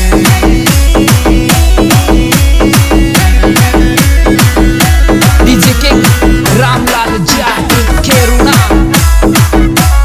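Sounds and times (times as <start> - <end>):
electronic beat of deep drums: 0.0 - 10.0.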